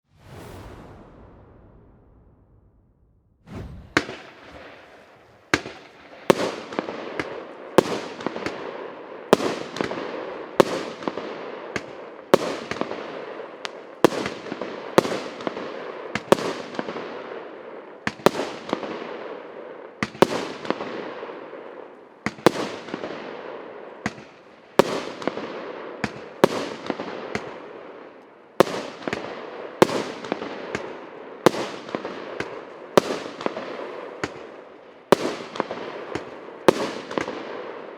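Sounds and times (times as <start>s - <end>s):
firework bangs with hiss: 0.1s - 2.6s, 3.4s - 8.7s, 9.3s - 17.2s, 24.0s - 27.6s, 28.6s - 37.8s.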